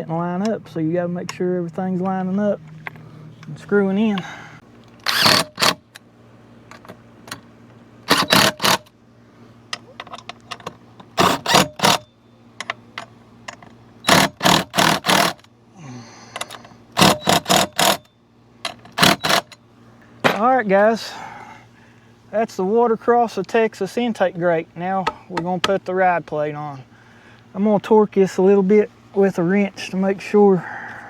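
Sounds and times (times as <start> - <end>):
hand tool clicking: 5.0 - 5.8, 8.1 - 8.9, 14.1 - 15.4, 16.4 - 18.0, 18.7 - 19.6.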